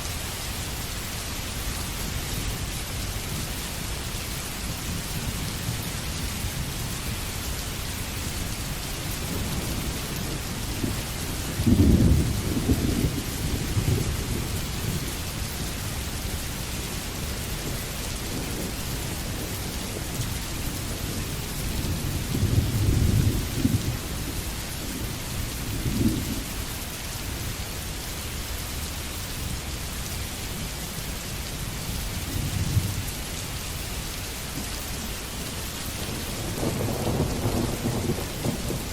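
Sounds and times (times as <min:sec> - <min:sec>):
steady rain falling: 0:00.0 - 0:38.9
thunder rumbling: 0:08.6 - 0:26.5, 0:35.8 - 0:38.9.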